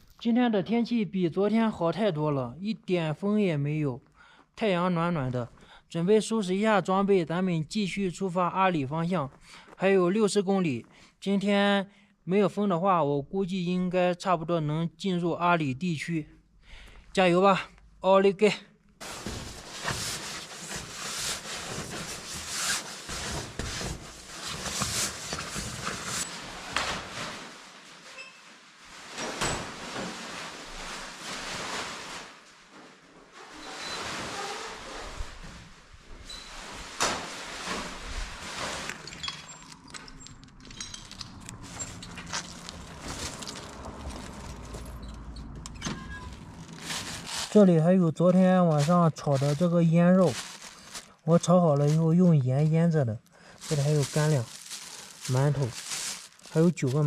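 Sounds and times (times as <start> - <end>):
camping gear rustling and scraping: 19.0 - 52.3, 53.4 - 57.0.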